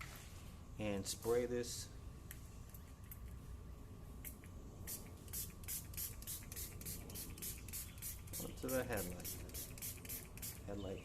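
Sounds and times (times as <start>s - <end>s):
spray bottle spritzes: 4.9s - 10.6s.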